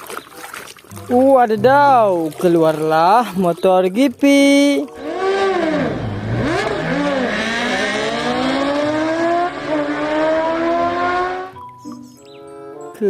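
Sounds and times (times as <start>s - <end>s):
motorcycle engine revving: 4.9s - 11.6s.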